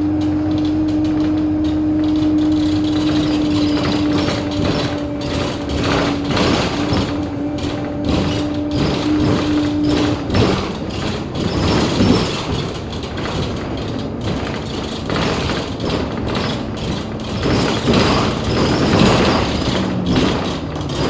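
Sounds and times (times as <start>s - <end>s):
bus engine and road noise: 0.0s - 21.0s
steady rattling: 0.0s - 21.0s
loose panels squeaking: 0.1s - 10.9s.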